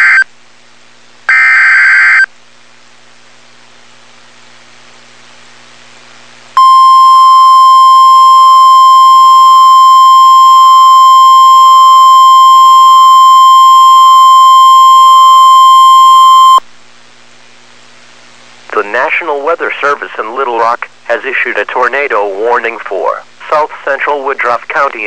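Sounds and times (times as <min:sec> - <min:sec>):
loud steady alarm tone: 0:01.3 - 0:02.3, 0:06.6 - 0:16.6
faint radio hiss: 0:16.1 - 0:25.0.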